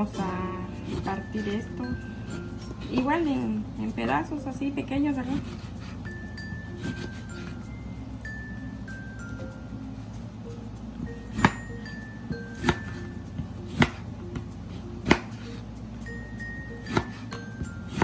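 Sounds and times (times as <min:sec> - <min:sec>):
background music with mallet melody: 0:00.0 - 0:18.0
knife chopping on cutting board: 0:00.7 - 0:01.6, 0:02.3 - 0:03.4, 0:05.2 - 0:06.0, 0:06.8 - 0:07.6, 0:11.2 - 0:11.7, 0:12.4 - 0:15.6, 0:16.8 - 0:18.0.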